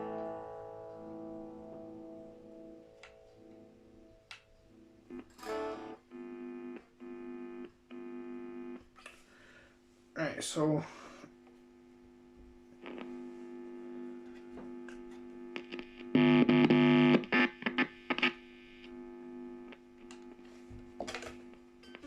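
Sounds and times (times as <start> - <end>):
loud amplifier buzz: 0.0 - 8.9, 10.9 - 22.0
guitar amplifier humming: 0.0 - 22.0.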